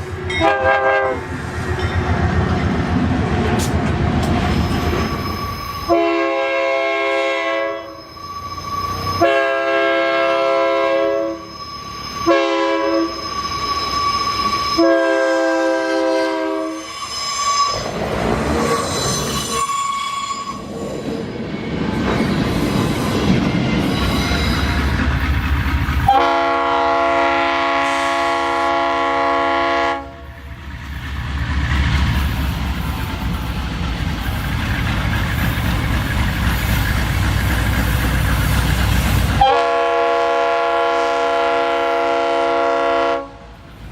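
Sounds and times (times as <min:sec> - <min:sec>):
train rumbling: 0:00.0 - 0:43.9
locomotive air horn: 0:00.3 - 0:01.3, 0:05.8 - 0:08.0, 0:09.0 - 0:11.5, 0:12.1 - 0:17.9, 0:26.1 - 0:30.3, 0:39.4 - 0:43.4.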